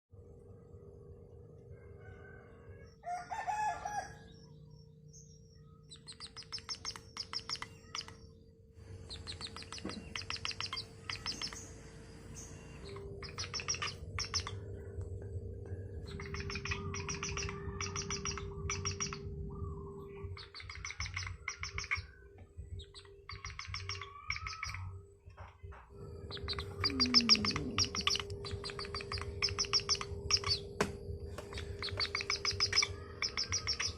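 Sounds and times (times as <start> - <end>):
owl trilling: 5.8 - 8.2, 8.9 - 15.0, 15.6 - 25.1, 25.9 - 33.9.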